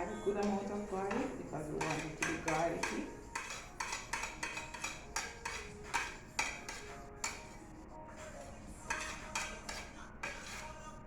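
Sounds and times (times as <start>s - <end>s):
metal utensil knocking on pot: 0.4s - 7.4s.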